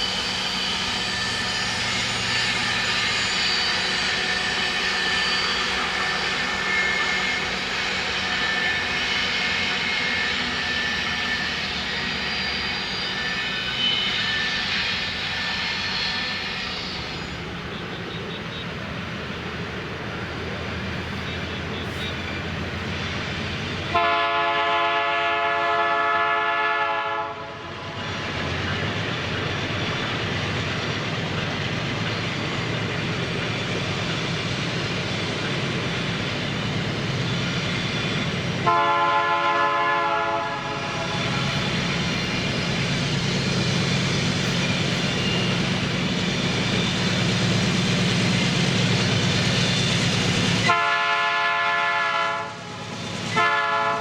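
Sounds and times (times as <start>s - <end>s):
train horn blasts: 0.0s - 11.6s, 23.9s - 28.0s, 38.6s - 41.8s, 50.6s - 52.8s, 53.4s - 54.0s
train rumble and wheel clatter: 0.0s - 54.0s.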